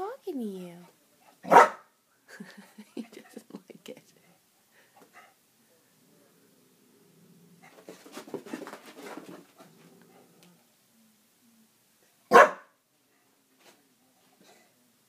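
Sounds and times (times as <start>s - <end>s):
dog barking: 1.4s - 1.9s, 12.3s - 12.8s.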